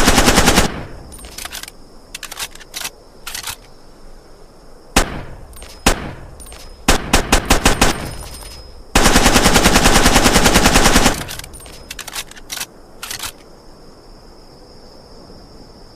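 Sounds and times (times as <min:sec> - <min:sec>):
submachine gun firing: 0:00.0 - 0:01.0, 0:05.0 - 0:11.6.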